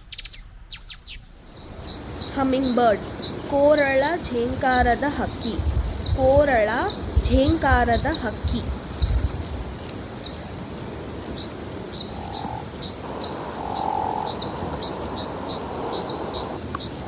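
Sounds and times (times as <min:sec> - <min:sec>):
hummingbird chirping: 0:00.0 - 0:17.0
steady low background noise: 0:00.0 - 0:17.0.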